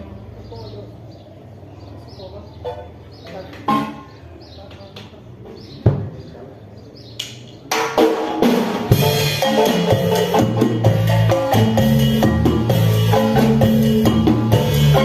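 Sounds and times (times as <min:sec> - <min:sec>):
marimba band playing: 0:03.7 - 0:04.2, 0:07.7 - 0:15.0.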